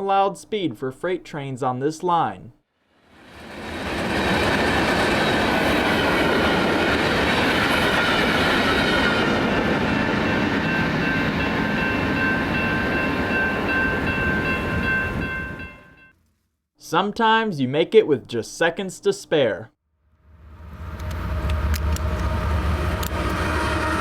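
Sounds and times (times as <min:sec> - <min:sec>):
freight train wheels on rail: 0:03.3 - 0:15.6, 0:20.7 - 0:24.0
high ringing tones: 0:10.0 - 0:16.1.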